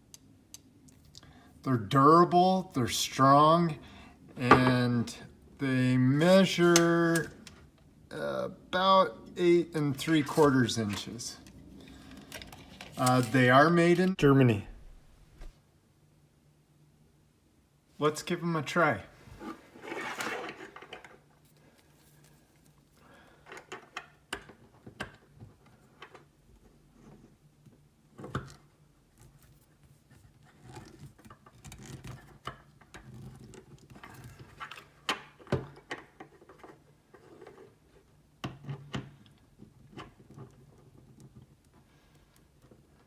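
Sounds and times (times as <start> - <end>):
handling rustle: 9.9 - 13.7.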